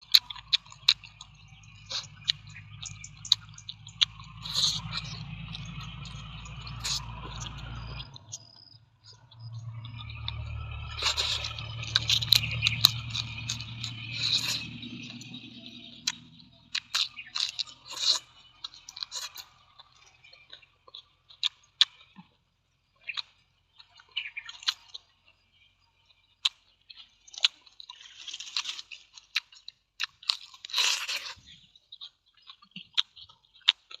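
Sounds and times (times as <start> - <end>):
food clicks and crackles: 0.0 - 34.0.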